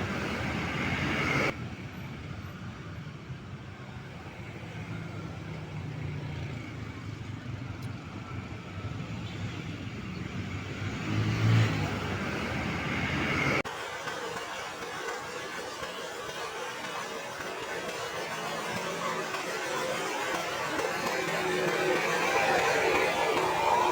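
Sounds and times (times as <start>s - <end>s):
thin street hum: 0.0s - 2.6s
bus diesel engine rumbling: 0.0s - 15.8s, 16.6s - 23.9s.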